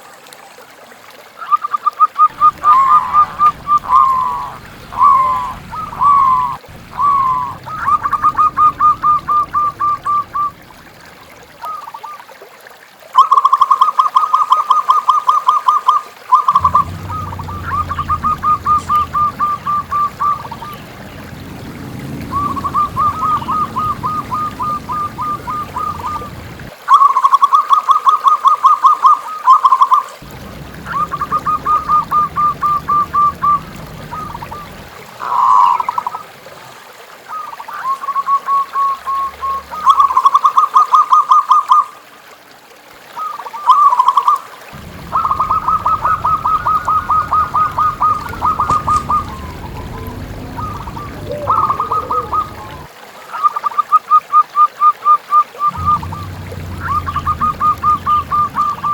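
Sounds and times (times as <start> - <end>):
trickling stream: 0.0 - 58.9
dove trilling calls: 2.3 - 11.4, 16.4 - 26.7, 29.6 - 36.2, 44.1 - 52.9, 55.7 - 58.9.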